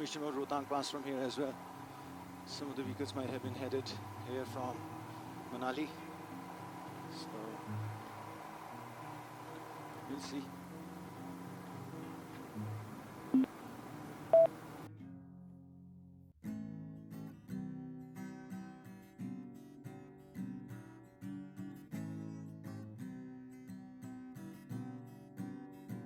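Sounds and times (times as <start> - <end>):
background noise: 0.0 - 14.9
strummed acoustic guitar: 0.0 - 26.0
short loud beep: 14.3 - 14.5.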